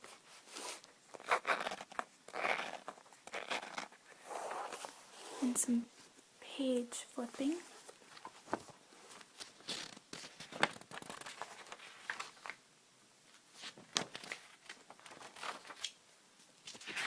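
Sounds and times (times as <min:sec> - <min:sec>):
paper pages flipping: 0:00.5 - 0:05.0, 0:07.8 - 0:12.6, 0:13.6 - 0:16.0, 0:16.6 - 0:17.0.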